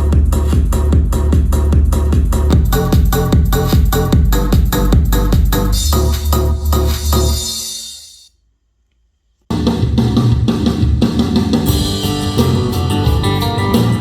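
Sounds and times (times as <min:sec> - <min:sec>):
drum and guitar rock music: 0:00.0 - 0:07.8, 0:09.5 - 0:14.0
electronic dance music: 0:02.5 - 0:08.2, 0:11.7 - 0:14.0.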